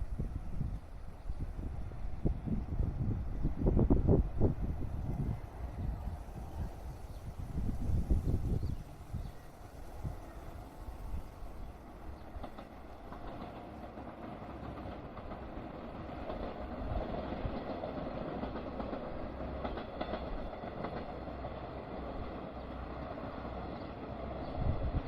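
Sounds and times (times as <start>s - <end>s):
electric train rumbling: 0.0s - 25.0s
wheels clacking over rail joints: 8.4s - 23.8s.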